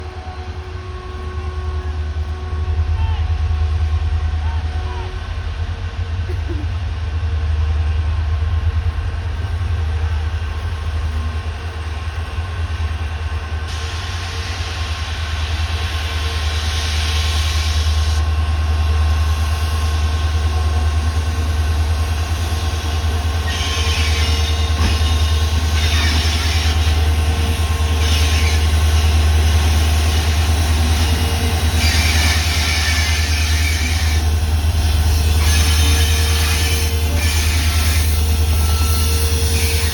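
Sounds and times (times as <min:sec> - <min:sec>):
diesel locomotive engine humming: 0:00.0 - 0:39.9
wheels hissing on rails: 0:09.5 - 0:39.9.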